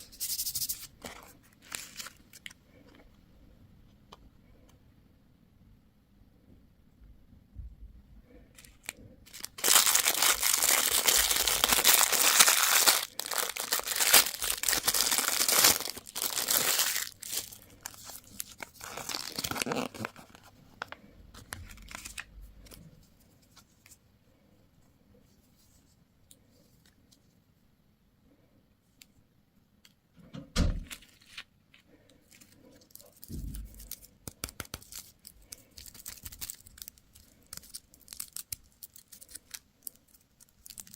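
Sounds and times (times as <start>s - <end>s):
wrapper tearing and crinkling: 0.2s - 2.6s, 8.6s - 20.5s, 21.4s - 22.3s, 32.4s - 40.9s.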